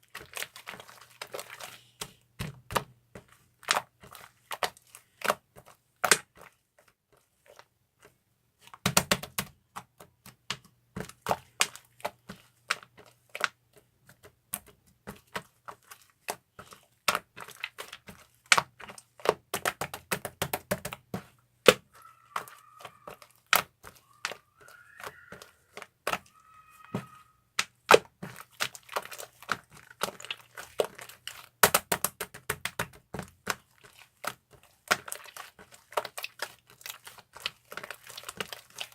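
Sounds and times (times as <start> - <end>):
slime crackling and popping: 0.0 - 2.0, 14.2 - 38.9.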